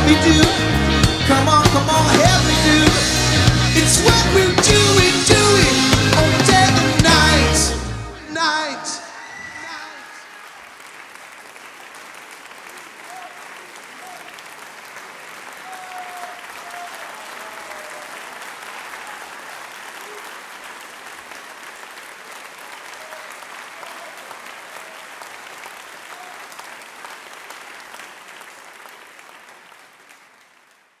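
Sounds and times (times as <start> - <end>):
audience applauding and cheering: 0.0 - 31.0
short calls from audience: 5.7 - 11.2, 12.6 - 21.4, 22.5 - 28.5.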